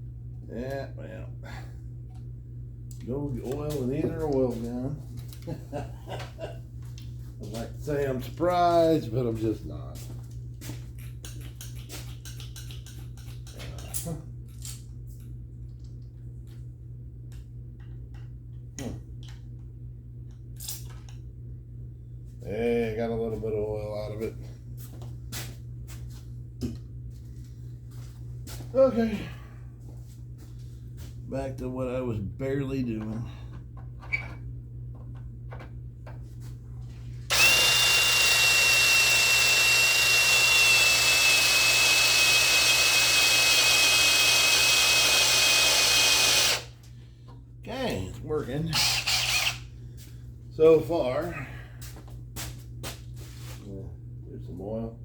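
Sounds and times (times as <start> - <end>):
low electrical hum: 0.0 - 55.0
power drill cutting steel: 37.3 - 46.7, 48.7 - 49.6.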